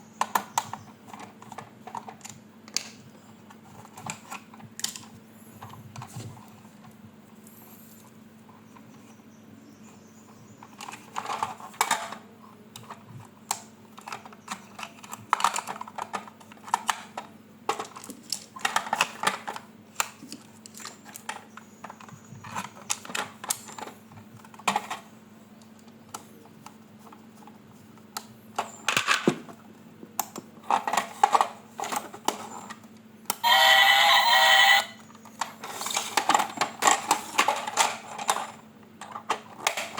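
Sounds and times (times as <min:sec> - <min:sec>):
plastic toy parts clicking and rattling: 0:00.2 - 0:03.0, 0:03.7 - 0:05.7, 0:10.6 - 0:12.2, 0:12.8 - 0:23.9, 0:30.3 - 0:32.5, 0:35.6 - 0:39.9
electronic toy sound: 0:33.4 - 0:35.0.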